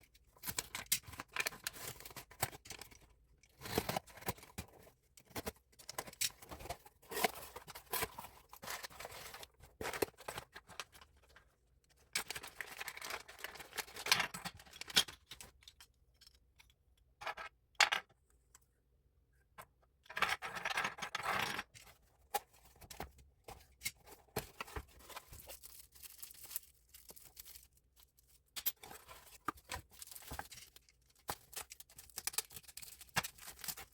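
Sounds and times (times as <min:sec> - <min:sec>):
packaging rustling: 0:24.0 - 0:33.9.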